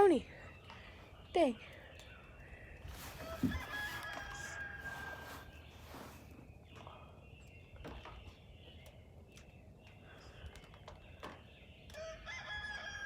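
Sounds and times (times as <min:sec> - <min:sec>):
faint rooster crowing: 0:03.0 - 0:06.3, 0:11.9 - 0:13.0.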